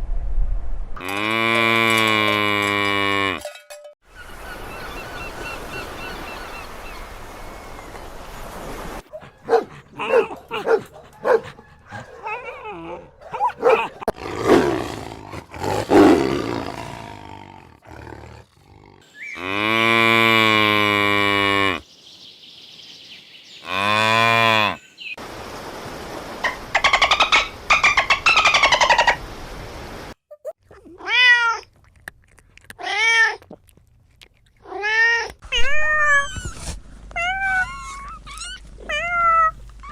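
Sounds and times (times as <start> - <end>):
big cat grunting and roaring: 12.2 - 21.8
cow mooing: 19.4 - 21.8
fast trembling animal call: 26.7 - 29.2.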